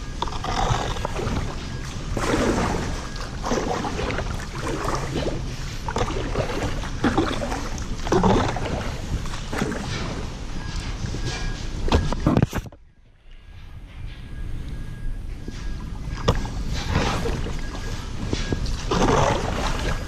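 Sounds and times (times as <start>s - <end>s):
steady low rumble: 0.0s - 20.0s
paddle splashing in water: 0.2s - 12.7s, 16.2s - 20.0s.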